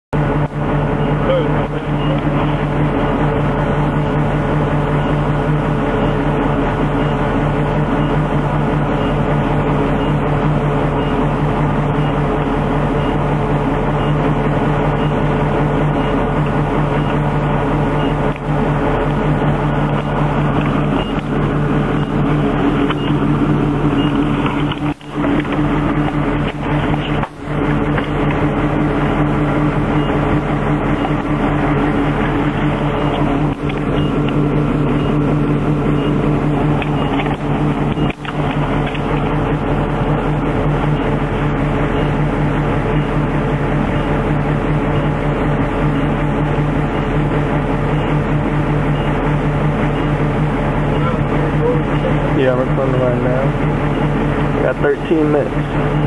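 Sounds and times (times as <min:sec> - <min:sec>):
vehicle engine droning hum: 0:00.1 - 0:56.0.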